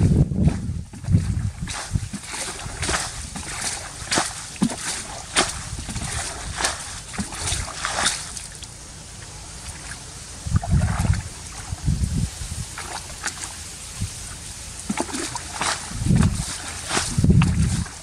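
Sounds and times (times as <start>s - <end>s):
water splashing: 0.0s - 18.0s.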